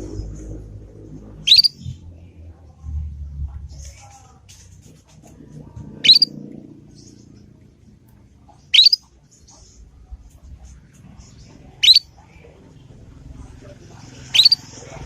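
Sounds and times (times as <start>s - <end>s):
canary chirps sweeping upward: 1.4s - 2.0s, 6.0s - 6.4s, 8.6s - 9.1s, 11.2s - 12.1s, 14.2s - 15.0s
faint high twittering: 1.4s - 2.0s, 6.0s - 7.6s, 8.6s - 9.9s, 11.0s - 12.5s, 14.0s - 15.0s.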